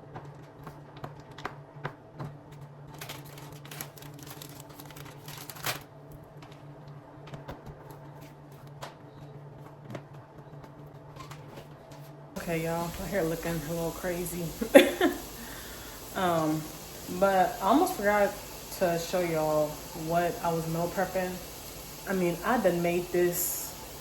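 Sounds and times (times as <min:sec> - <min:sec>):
steady low hum: 0:05.9 - 0:24.0.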